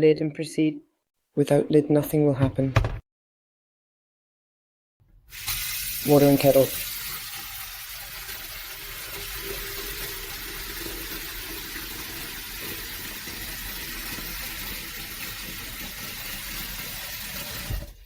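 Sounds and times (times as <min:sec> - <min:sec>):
tap water filling kettle: 0:05.3 - 0:18.0.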